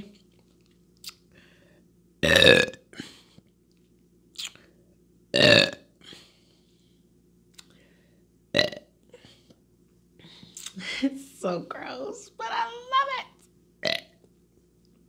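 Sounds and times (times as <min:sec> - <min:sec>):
woman burping loudly: 0:02.2 - 0:03.0, 0:05.4 - 0:05.9, 0:08.6 - 0:08.9, 0:13.8 - 0:14.2.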